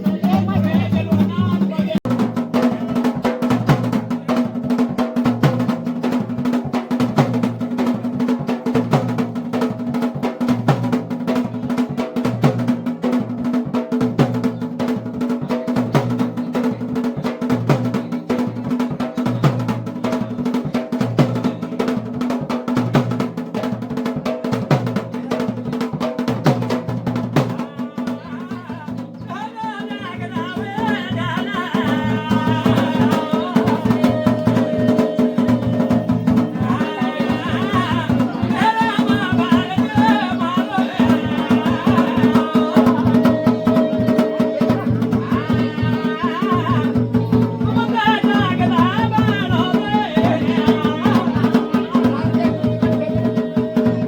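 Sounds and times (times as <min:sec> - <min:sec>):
fast folk drumming: 0:00.0 - 0:54.0.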